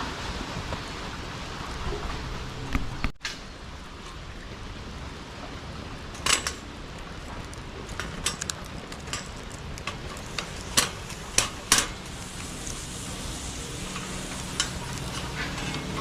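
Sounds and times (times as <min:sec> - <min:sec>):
campfire crackling and popping: 0:06.0 - 0:16.0
hiss of flame: 0:08.3 - 0:16.0.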